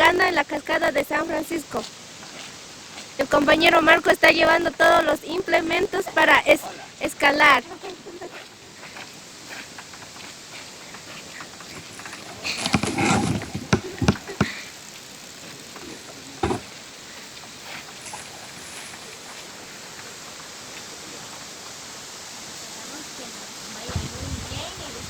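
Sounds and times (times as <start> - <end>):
loud knocks and bumps: 11.7 - 14.5, 16.4 - 16.7.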